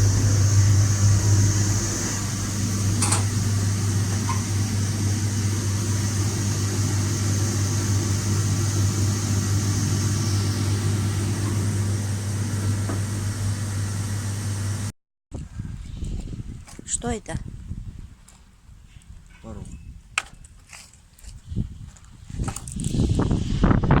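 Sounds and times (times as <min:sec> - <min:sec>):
low mechanical hum: 0:00.0 - 0:14.9.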